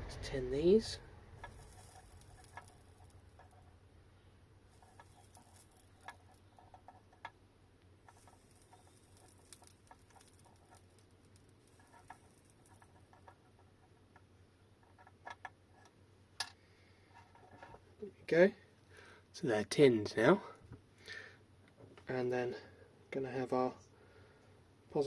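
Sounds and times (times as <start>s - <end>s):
flux sizzling under iron: 1.4s - 3.6s, 4.7s - 6.6s, 8.0s - 13.4s.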